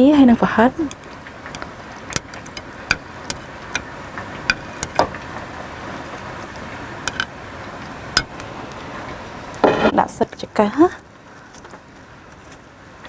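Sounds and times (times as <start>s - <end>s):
steady background hiss: 0.0s - 10.2s
kitchen utensils clinking: 0.3s - 5.5s, 7.0s - 7.3s, 8.2s - 8.5s.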